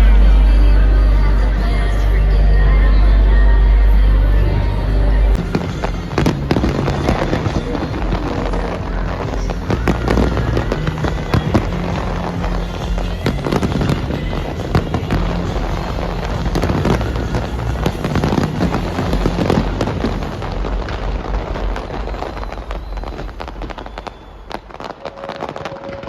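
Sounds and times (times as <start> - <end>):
music playing: 0.0 - 26.0
fireworks bangs and crackling: 5.3 - 26.0.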